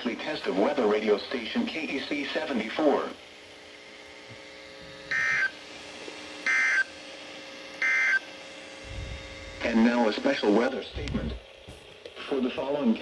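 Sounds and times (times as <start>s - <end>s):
receiver hum and hiss: 0.0s - 13.0s.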